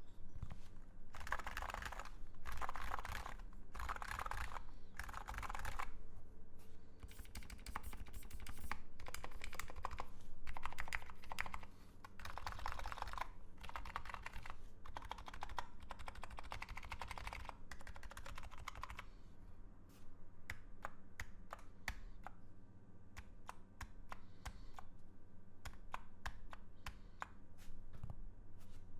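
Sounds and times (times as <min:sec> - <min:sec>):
keyboard typing: 0:00.4 - 0:05.9, 0:07.0 - 0:19.1.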